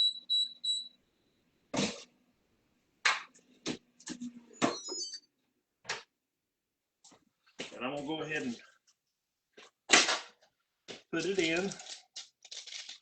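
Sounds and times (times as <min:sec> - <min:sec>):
air fryer control panel beep: 0:00.0 - 0:01.0.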